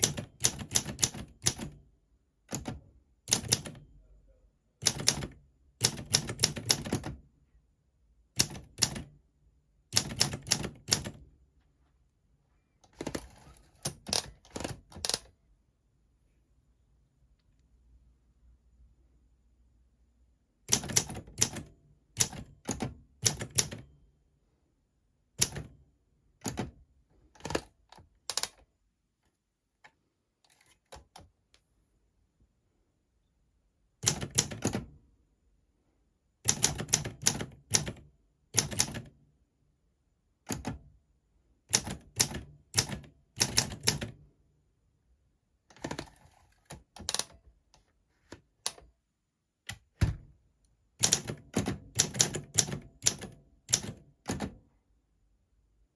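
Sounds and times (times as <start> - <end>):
manual typewriter typing: 0.0 - 1.8, 2.5 - 3.8, 4.8 - 7.2, 8.4 - 9.1, 9.9 - 11.2, 12.9 - 15.3, 20.7 - 23.9, 25.4 - 25.7, 27.4 - 28.6, 34.0 - 34.9, 36.5 - 39.1, 41.7 - 44.2, 45.8 - 47.4, 51.0 - 54.6.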